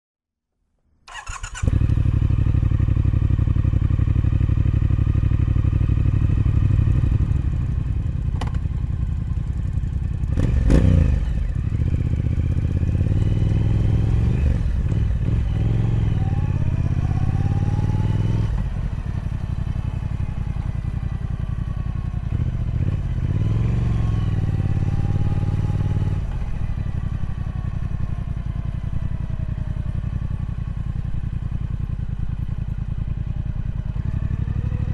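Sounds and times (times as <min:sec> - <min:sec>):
motorcycle engine starting and idling: 0:01.0 - 0:34.9
motorcycle throttle blip: 0:08.3 - 0:08.7.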